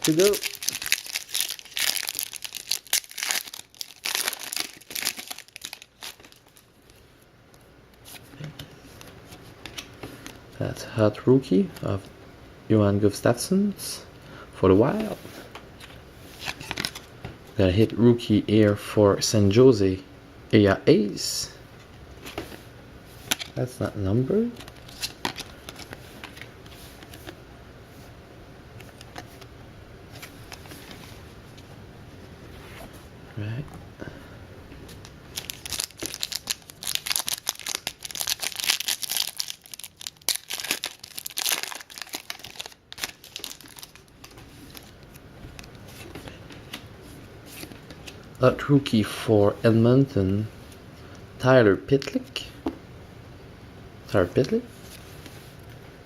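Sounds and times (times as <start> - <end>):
wrapper tearing and crinkling: 0.0 - 6.6, 35.3 - 45.7
low steady hum: 0.0 - 56.0.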